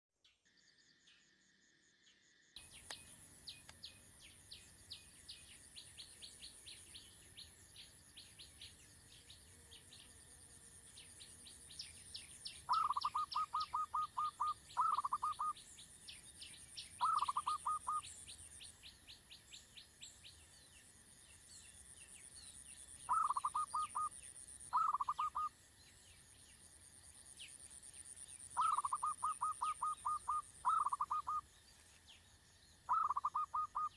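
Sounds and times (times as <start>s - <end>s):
birds chirping: 11.0s - 26.4s, 27.4s - 33.9s.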